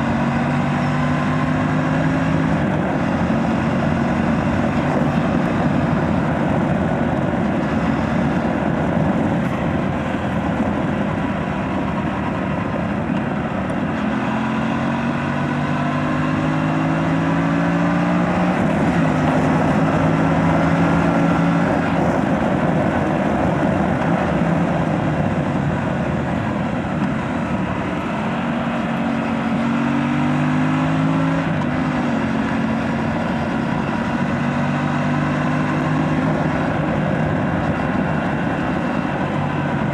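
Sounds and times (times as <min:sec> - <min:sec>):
motorcycle engine revving: 0:00.0 - 0:39.9
wind rush: 0:00.0 - 0:39.9.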